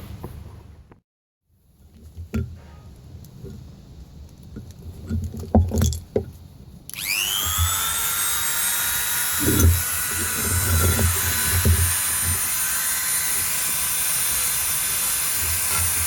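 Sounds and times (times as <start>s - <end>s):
power drill whine: 6.9s - 16.0s.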